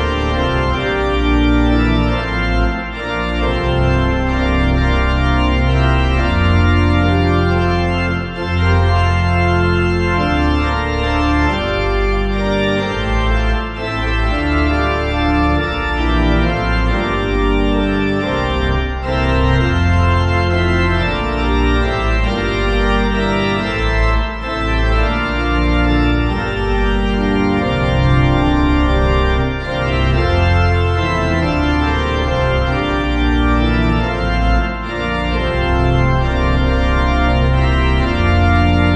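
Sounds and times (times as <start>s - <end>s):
organ playing sustained chords: 0.0s - 38.9s.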